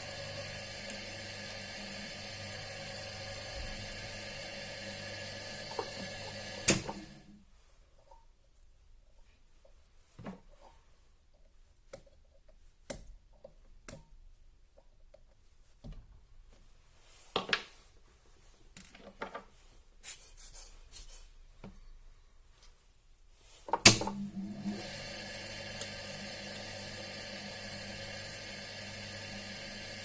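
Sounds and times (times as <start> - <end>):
electric drill motor humming: 0.0 - 7.3.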